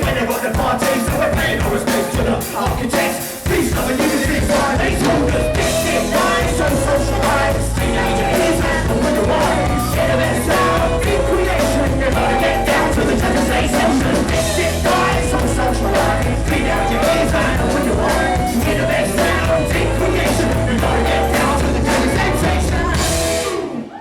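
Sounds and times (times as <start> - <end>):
live hip hop band music: 0.0 - 23.9
vocals over music: 0.0 - 24.0
heavy bass: 4.5 - 23.6.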